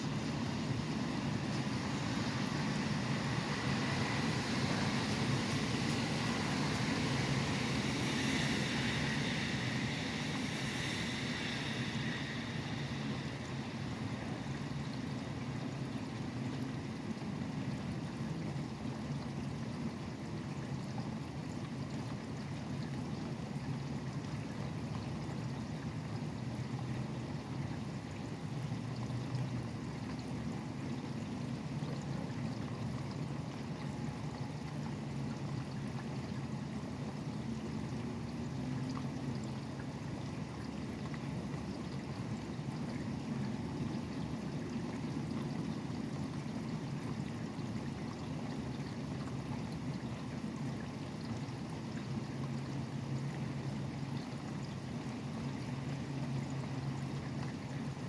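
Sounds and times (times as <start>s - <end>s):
highway traffic rumble: 0.0s - 16.4s
steady rain falling: 0.1s - 15.6s
tyres hissing on wet road: 0.1s - 15.6s.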